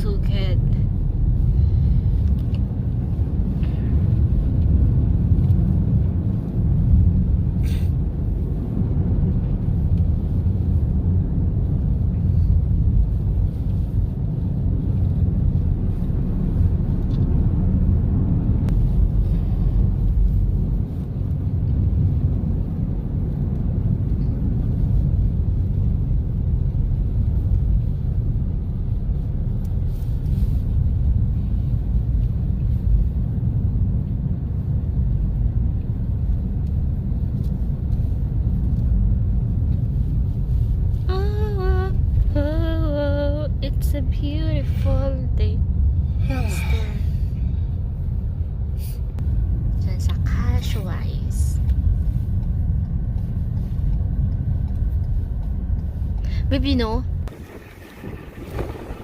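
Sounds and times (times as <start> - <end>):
car driving rumble: 0.0 - 59.0.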